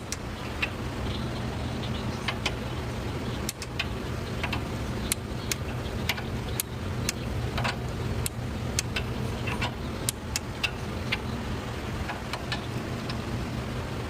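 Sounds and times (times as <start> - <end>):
low mechanical hum: 0.0 - 14.0
sharp clicks and taps: 3.4 - 11.3.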